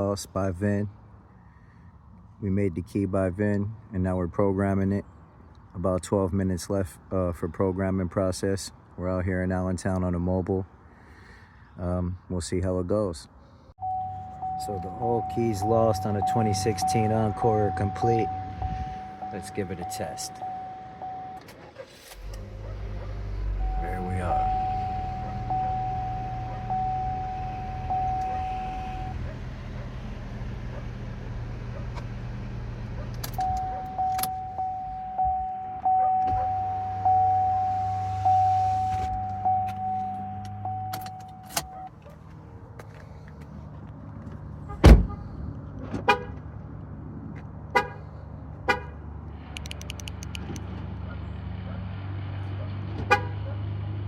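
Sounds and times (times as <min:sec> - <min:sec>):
car warning chime dinging: 0:13.8 - 0:21.5, 0:23.4 - 0:29.3, 0:33.3 - 0:41.9
low engine hum: 0:13.8 - 0:54.0
car door shutting: 0:32.9 - 0:41.9, 0:44.8 - 0:45.2.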